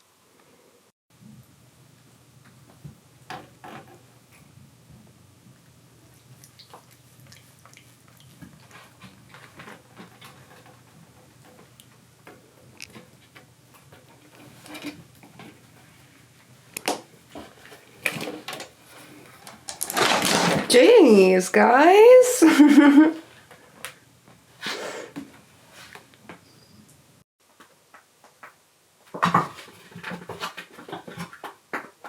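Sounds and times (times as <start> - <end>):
kittens' paws tapping and scratching: 6.0 - 20.7, 27.6 - 32.0
knocks and scrapes: 12.3 - 16.2, 17.3 - 20.7.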